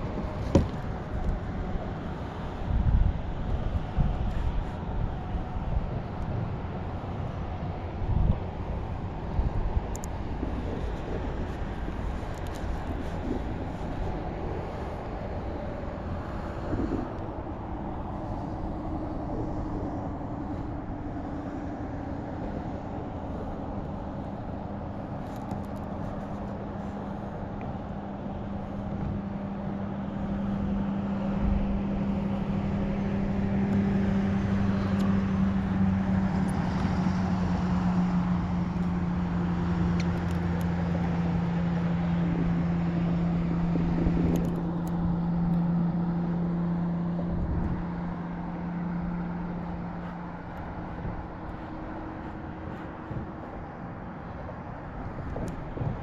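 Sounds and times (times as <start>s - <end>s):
engine hum: 0.0s - 56.0s.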